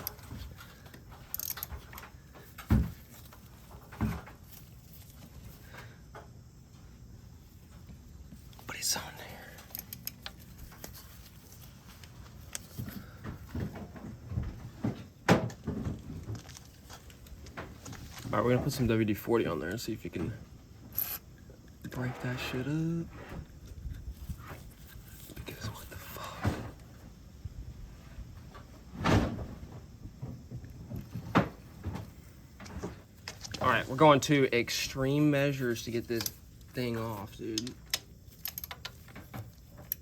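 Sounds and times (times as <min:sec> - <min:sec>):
hand tools clicking on engine: 0:00.0 - 0:02.1, 0:37.0 - 0:40.0.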